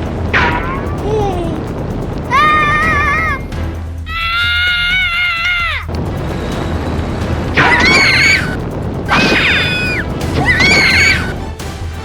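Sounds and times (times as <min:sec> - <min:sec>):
loud steady rumble: 0:00.0 - 0:04.1, 0:05.6 - 0:12.0
short pitch-bending cartoon calls: 0:07.6 - 0:11.4.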